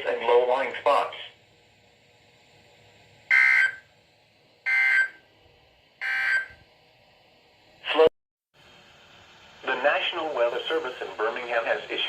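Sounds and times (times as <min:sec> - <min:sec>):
two-tone digital chirps: 0:04.7 - 0:05.2, 0:06.0 - 0:06.5.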